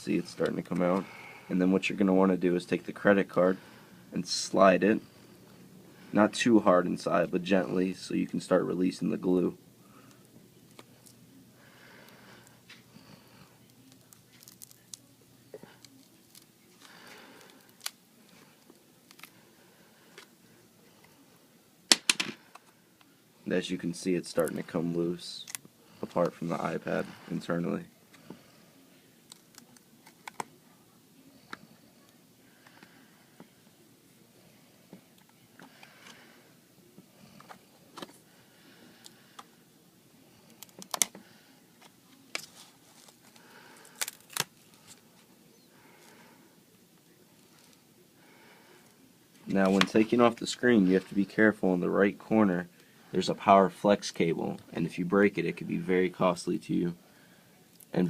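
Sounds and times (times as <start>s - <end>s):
plastic card crackling under glass: 13.8s - 15.1s, 42.3s - 45.0s.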